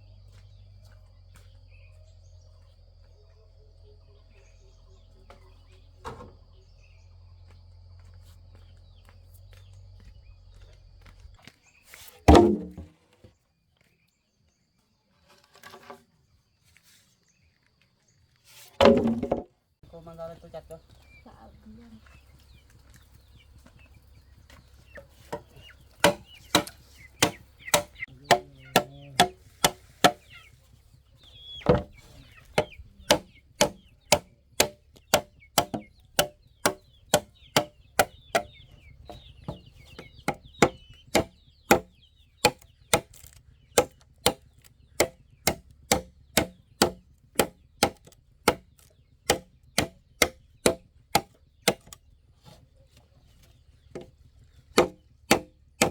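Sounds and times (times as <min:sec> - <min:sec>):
chickens clucking and chirping: 0:00.0 - 0:12.8, 0:19.9 - 0:55.9
blade chopping bamboo: 0:12.2 - 0:12.9, 0:18.8 - 0:19.5, 0:25.3 - 0:30.5, 0:31.6 - 0:52.0, 0:53.9 - 0:54.1, 0:54.7 - 0:55.9.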